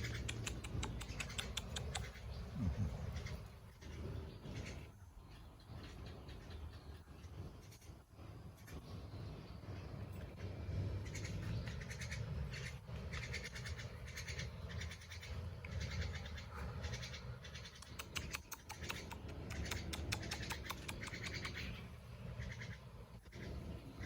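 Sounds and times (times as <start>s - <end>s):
quick high chirping calls: 0.0s - 4.8s, 11.0s - 22.9s
steady low rumble: 0.0s - 24.0s.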